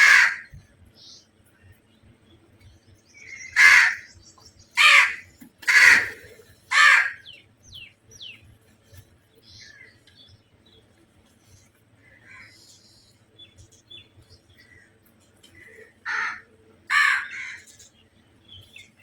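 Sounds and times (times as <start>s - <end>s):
crow cawing: 0.0s - 0.5s, 3.3s - 4.1s, 4.8s - 7.3s, 15.6s - 17.7s.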